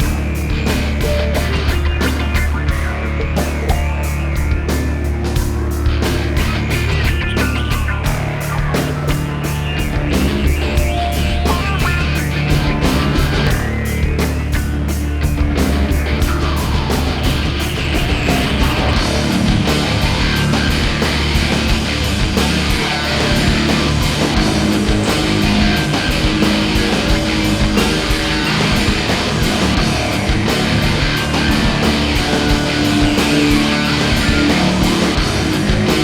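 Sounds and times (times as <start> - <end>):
distorted guitar rock music: 0.0 - 36.0.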